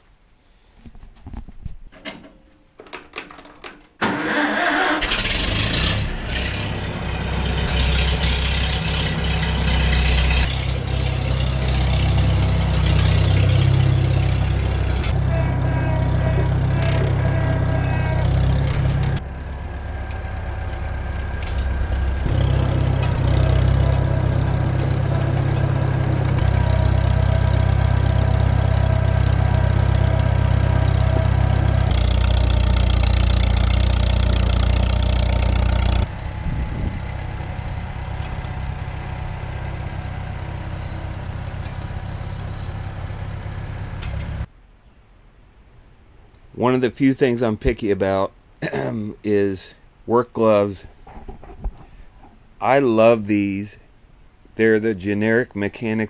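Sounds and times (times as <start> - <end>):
tractor engine starting and running: 1.9 - 44.5.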